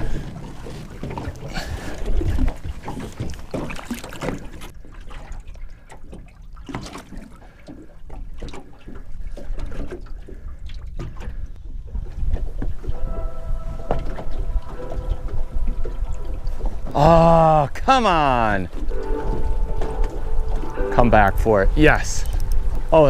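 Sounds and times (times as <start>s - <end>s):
water splashing against boat: 0.0s - 23.0s
wind rumble on microphone: 10.2s - 17.9s, 18.6s - 23.0s.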